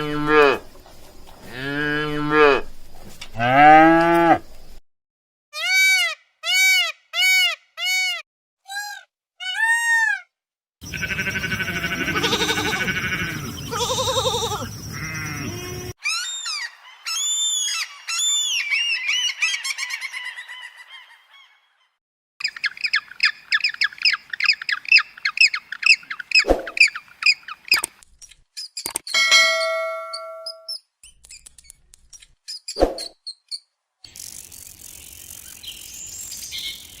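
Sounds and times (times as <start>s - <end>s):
short arched bird calls: 10.8s - 20.3s
rapid bird chirping: 10.8s - 20.8s, 22.4s - 28.9s, 30.5s - 37.0s
overlapping bird calls: 10.8s - 21.6s, 22.4s - 28.0s.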